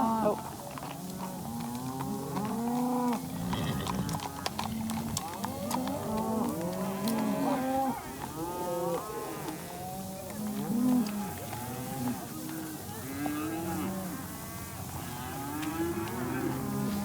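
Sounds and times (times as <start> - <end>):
cattle mooing: 1.7 - 9.9, 13.1 - 17.0.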